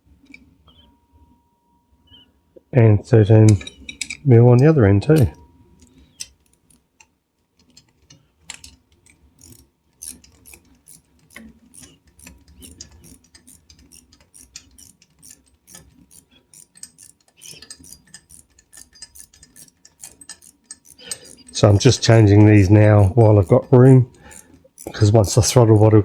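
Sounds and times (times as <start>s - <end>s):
ratchet spanner clicking: 8.5s - 26.0s.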